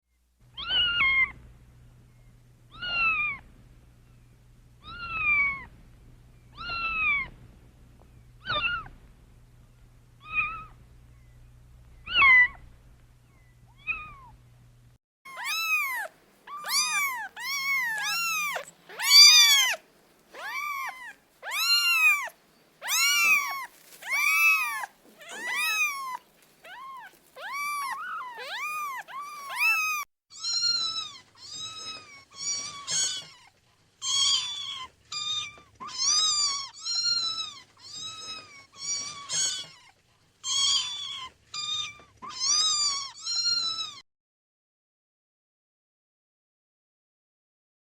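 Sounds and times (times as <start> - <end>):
faint low hum: 0.1 - 44.0
cats meowing: 0.6 - 1.4, 2.7 - 3.4, 4.8 - 5.7, 6.6 - 7.4, 8.4 - 9.0, 10.2 - 10.8, 12.1 - 12.6, 13.7 - 14.4, 15.3 - 44.0.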